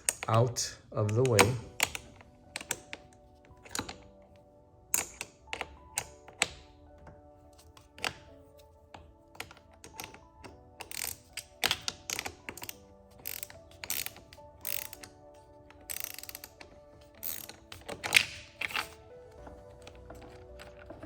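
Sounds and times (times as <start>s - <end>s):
ratchet wrench clicking: 10.8s - 15.1s, 15.8s - 16.6s, 17.2s - 18.8s.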